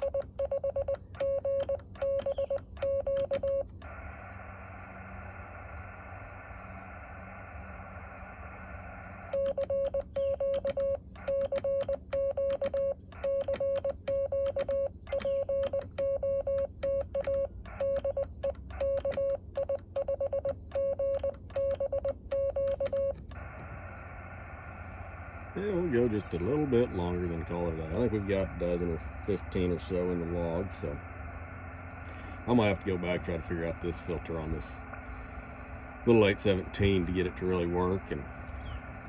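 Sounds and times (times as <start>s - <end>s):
morse code beeps: 0.0s - 39.0s
radio static hiss: 1.7s - 11.5s, 23.3s - 39.0s.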